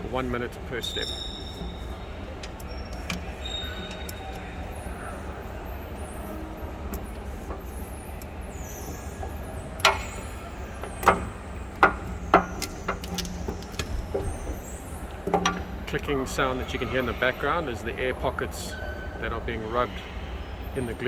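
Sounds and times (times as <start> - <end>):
sharp clicking under pressure roller: 6.9 - 16.4.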